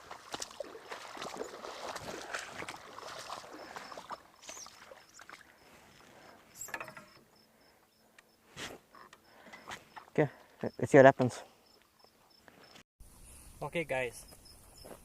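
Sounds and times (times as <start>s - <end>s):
rustling and splashing water: 0.0s - 7.0s.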